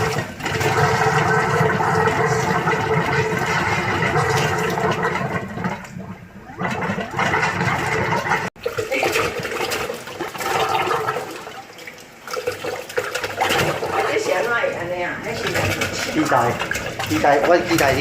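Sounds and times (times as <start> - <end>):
water gushing through pipes: 0.0 - 18.0.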